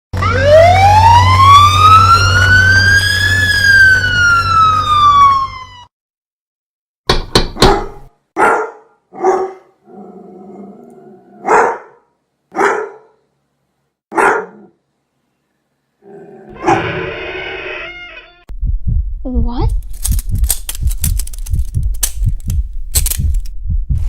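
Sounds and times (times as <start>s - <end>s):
siren wailing: 0.2s - 5.9s
dog barking: 7.6s - 9.8s, 11.4s - 13.2s, 14.1s - 14.8s, 16.6s - 16.9s
dog growling: 9.8s - 11.5s, 16.0s - 16.8s
low hum: 18.5s - 24.0s
sharp clicks: 19.7s - 23.6s.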